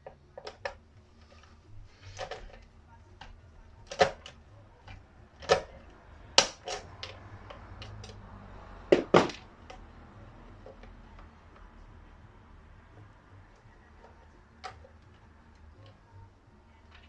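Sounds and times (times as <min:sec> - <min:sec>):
low steady hum: 0:00.0 - 0:17.0
tools knocking and clinking: 0:08.9 - 0:09.8.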